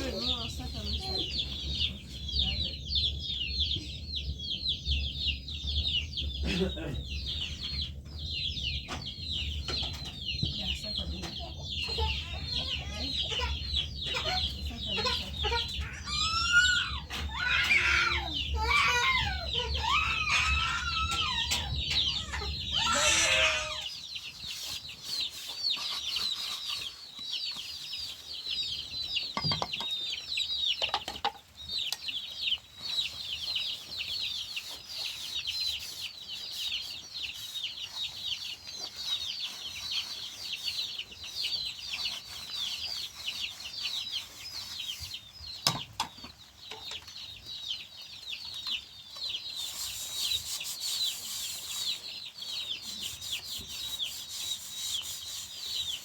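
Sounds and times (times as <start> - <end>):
chickens clucking and squawking: 0.0 - 56.0
chicks peeping: 0.0 - 56.0.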